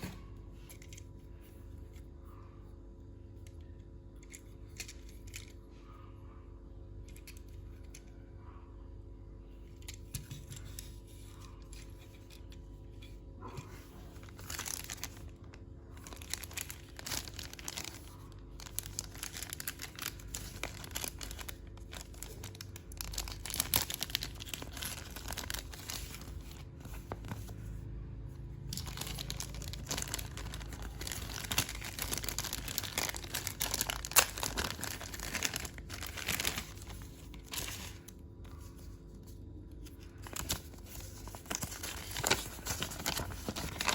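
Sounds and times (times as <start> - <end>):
plastic packaging crinkling and tearing: 9.7 - 27.7, 28.5 - 43.9.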